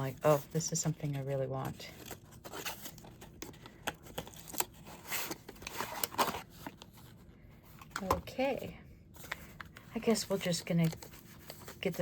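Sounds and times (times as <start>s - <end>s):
packaging rustling: 1.6s - 8.1s.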